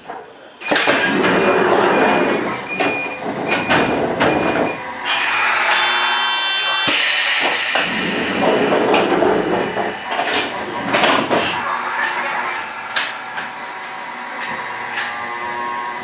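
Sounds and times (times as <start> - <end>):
train doors clunking and clicking: 0.0 - 16.0
rush of noise: 4.4 - 13.8.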